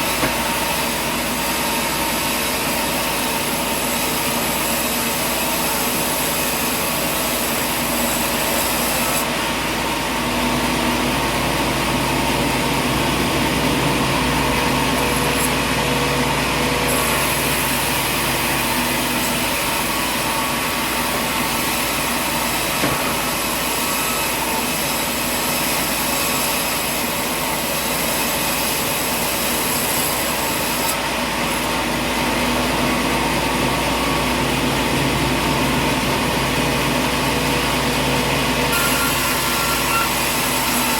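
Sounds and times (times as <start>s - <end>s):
engine-driven machine droning: 9.9s - 16.8s, 32.4s - 39.8s.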